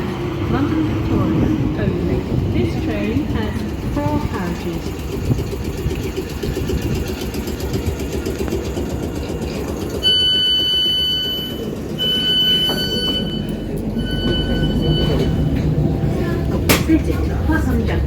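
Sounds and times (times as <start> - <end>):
train rumbling: 0.0 - 18.0
high electronic warning tone: 10.0 - 15.6.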